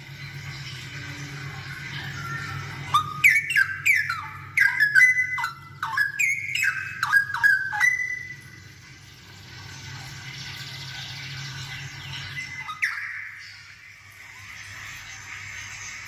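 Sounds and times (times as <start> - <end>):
bird singing whistled phrases: 2.1 - 8.5, 12.3 - 13.5.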